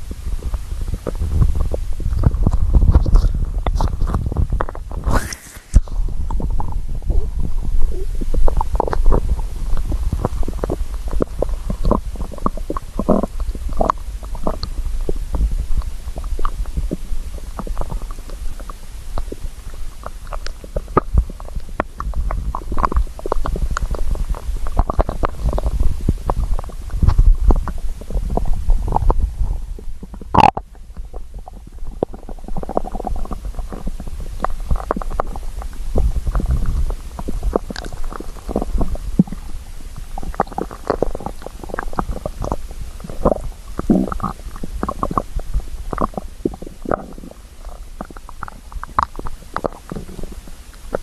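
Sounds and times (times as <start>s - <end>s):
stomach growling and gurgling: 0.0s - 51.0s.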